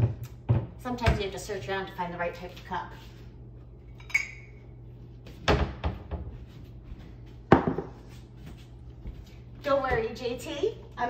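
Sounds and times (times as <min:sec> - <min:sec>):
cups clinking: 0:03.9 - 0:04.6.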